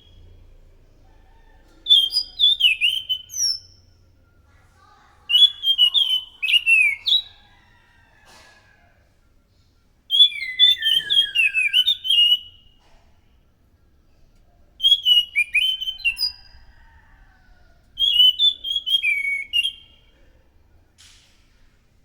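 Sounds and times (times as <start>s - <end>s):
thrush singing whistled notes: 1.8s - 4.0s, 5.3s - 7.4s, 10.1s - 12.8s, 14.8s - 16.7s, 18.0s - 20.1s.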